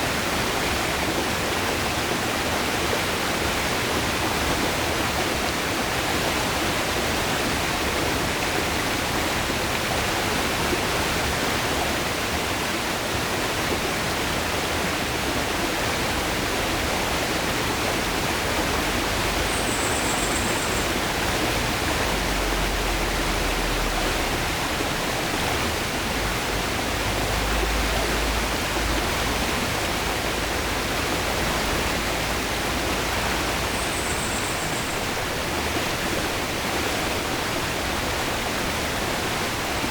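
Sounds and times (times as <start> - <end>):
water rushing over rocks: 20.4 - 39.9.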